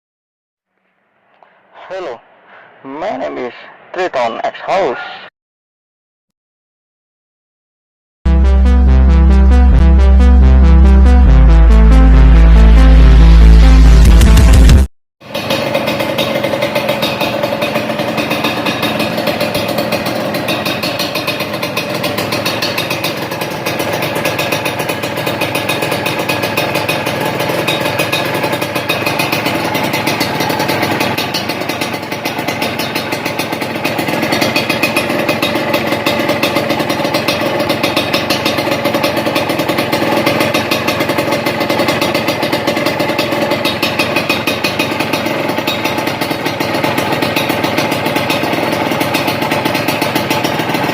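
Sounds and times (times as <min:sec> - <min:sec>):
two-stroke engine idling: 0:14.4 - 0:50.9.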